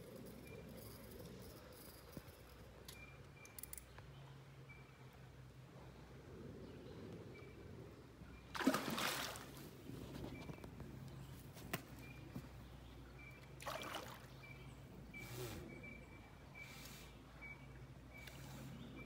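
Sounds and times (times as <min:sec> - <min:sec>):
water splashing: 0:08.5 - 0:09.6, 0:13.6 - 0:14.3.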